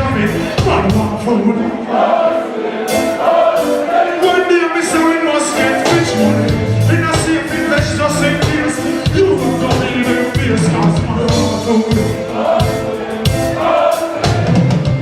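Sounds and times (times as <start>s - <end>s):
steady drum beat: 0.0s - 1.4s, 2.9s - 15.0s
live reggae band: 0.0s - 15.0s
person singing: 4.1s - 14.7s.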